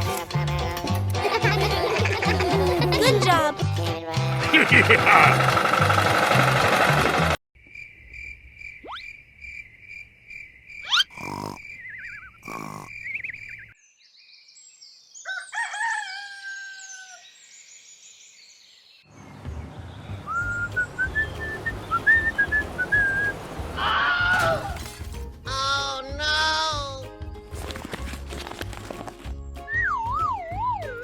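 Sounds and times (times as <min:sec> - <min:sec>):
falling bird-like calls: 0:10.8 - 0:13.7.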